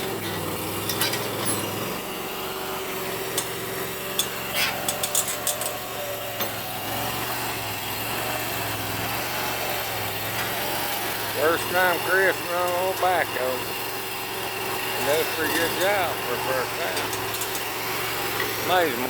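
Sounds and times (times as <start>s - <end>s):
backhoe engine running: 0.0s - 19.0s
sharp metallic clanks: 0.2s - 1.8s, 3.3s - 5.8s, 15.2s - 17.7s.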